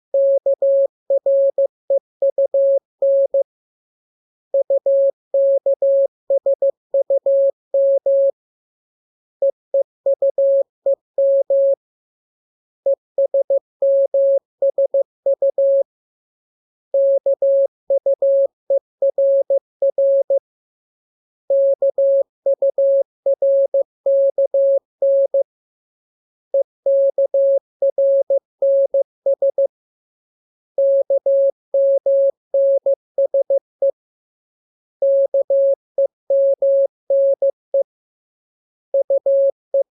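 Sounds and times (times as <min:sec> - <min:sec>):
morse code tone: 0:30.8 - 0:33.6, 0:35.0 - 0:37.8, 0:39.0 - 0:39.9.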